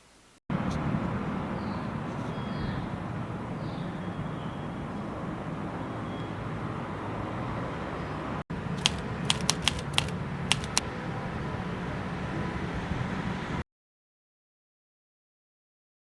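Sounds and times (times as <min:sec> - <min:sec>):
sharp clicks: 0:08.8 - 0:10.8.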